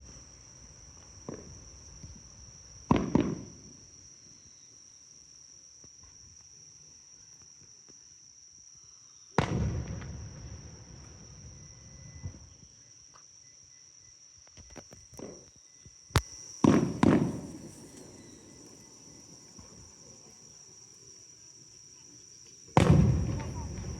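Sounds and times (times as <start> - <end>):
fireworks bursting: 16.2 - 23.9.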